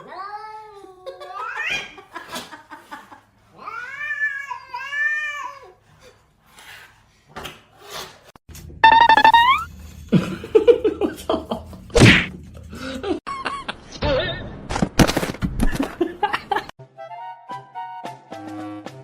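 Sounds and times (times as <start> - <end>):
cat meowing in yowls: 3.6 - 5.7.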